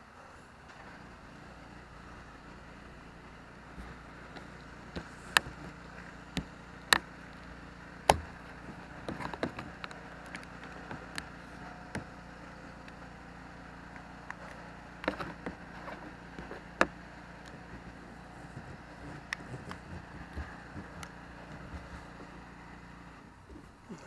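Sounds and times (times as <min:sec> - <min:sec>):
low outdoor background: 0:00.0 - 0:24.0
sharp clicks and knocks: 0:03.8 - 0:12.2, 0:13.9 - 0:22.4.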